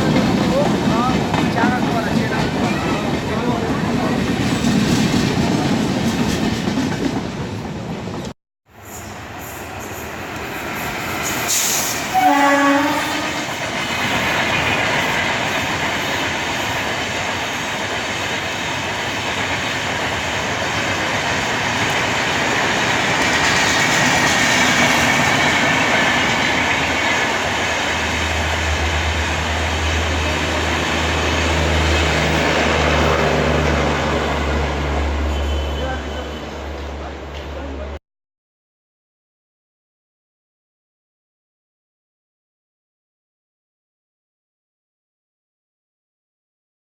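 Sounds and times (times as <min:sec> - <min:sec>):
train rumbling on rails: 0:00.0 - 0:38.0
train horn blast: 0:11.5 - 0:13.6, 0:35.0 - 0:36.7.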